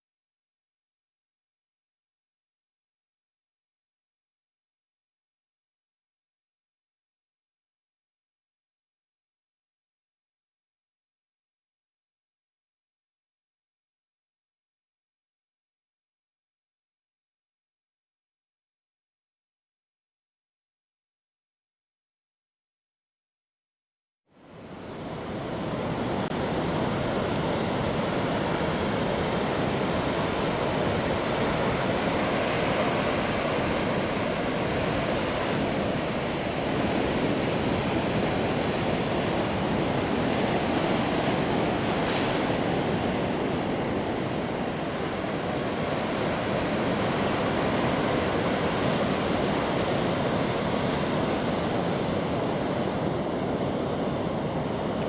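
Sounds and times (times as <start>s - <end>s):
waves breaking on a beach: 24.3s - 55.0s.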